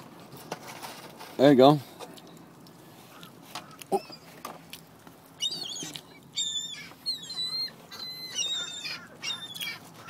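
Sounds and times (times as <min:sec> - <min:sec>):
seagulls calling: 0:03.1 - 0:04.5, 0:05.3 - 0:10.0.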